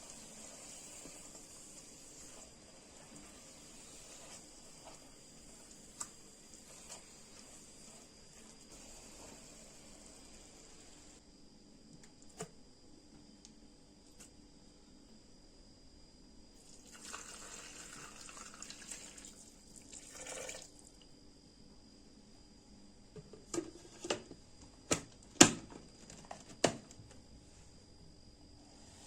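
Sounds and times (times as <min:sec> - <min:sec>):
water pouring: 0:16.6 - 0:20.8.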